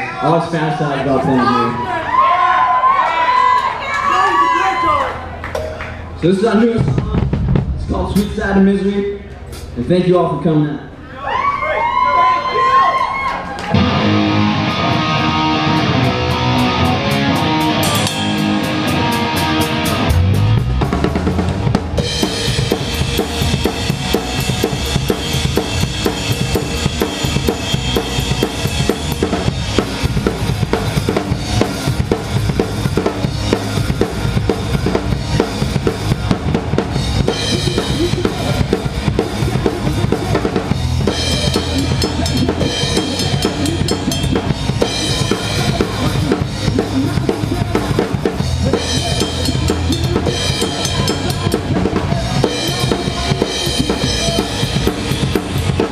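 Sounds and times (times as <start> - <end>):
rock band playing live: 13.7 - 55.9.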